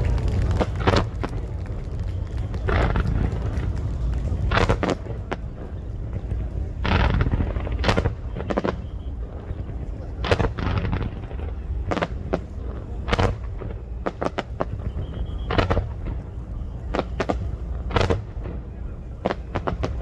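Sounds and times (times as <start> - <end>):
low rumble: 0.0 - 14.0
fireworks bangs: 0.0 - 20.0.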